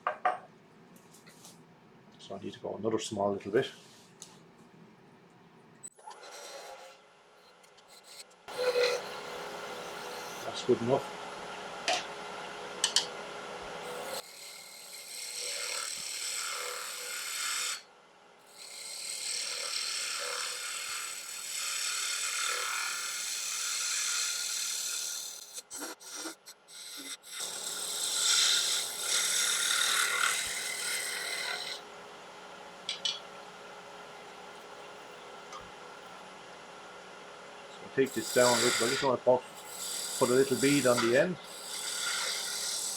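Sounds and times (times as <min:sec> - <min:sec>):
gouge scraping spinning wood: 0:06.2 - 0:07.0, 0:07.9 - 0:13.1, 0:13.8 - 0:17.8, 0:18.6 - 0:31.9, 0:37.9 - 0:42.9
wood lathe hum: 0:06.2 - 0:17.9, 0:18.5 - 0:42.9.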